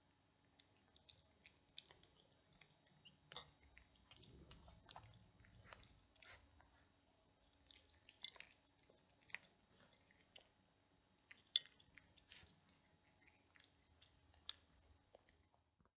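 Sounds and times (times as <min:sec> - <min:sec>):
cat chewing food: 0:00.0 - 0:15.9.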